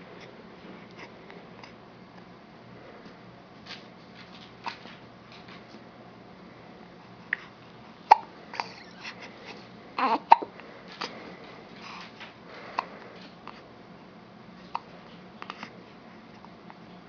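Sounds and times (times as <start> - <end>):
baby hiccuping: 8.1 - 9.0, 10.0 - 10.5
baby babbling: 10.0 - 10.5.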